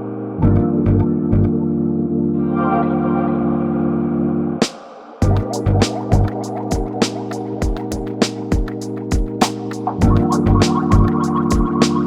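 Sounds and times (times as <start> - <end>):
music with steady beat: 4.6 - 12.0.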